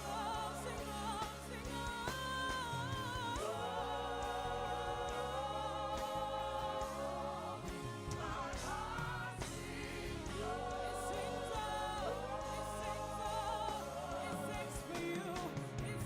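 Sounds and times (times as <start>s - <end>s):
choir singing held notes: 3.3s - 16.0s.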